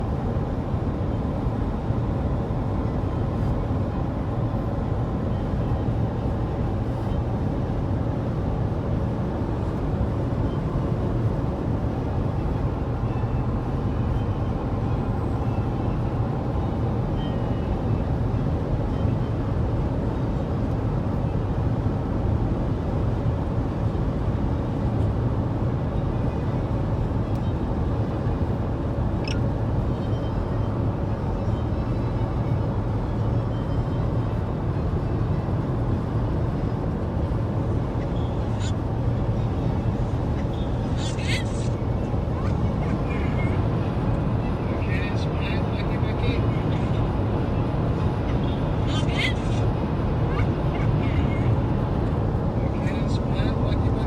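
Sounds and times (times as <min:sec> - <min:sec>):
car cabin road and engine noise: 0:00.0 - 0:54.0.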